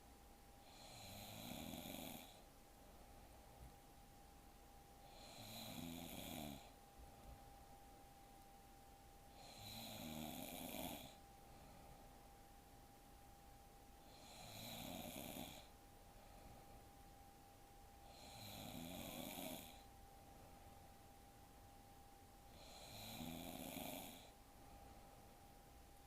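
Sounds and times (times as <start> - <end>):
faint steady hum: 0.0 - 26.0
woman snoring: 0.6 - 2.5, 5.0 - 6.8, 9.3 - 11.2, 14.0 - 15.7, 18.0 - 19.9, 22.5 - 24.4.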